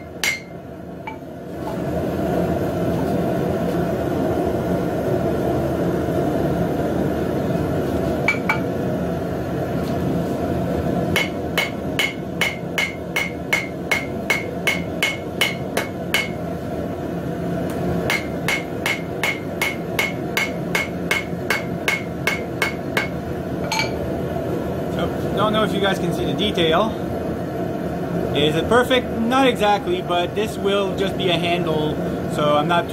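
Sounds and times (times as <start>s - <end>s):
hammer striking metal: 0.0s - 1.2s, 8.3s - 8.7s, 11.2s - 16.4s, 18.1s - 24.0s.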